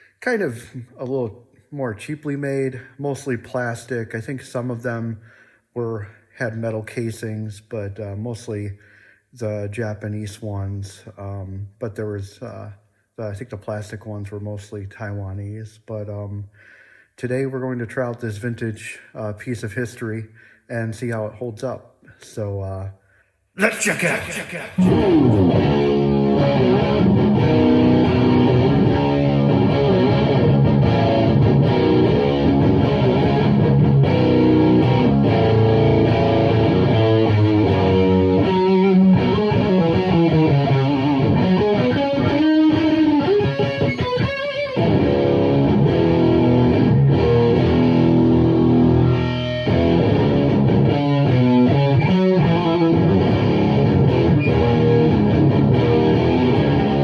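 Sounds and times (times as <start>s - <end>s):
distorted electric guitar chords: 24.2s - 57.0s
electric guitar lead lines: 24.2s - 57.0s.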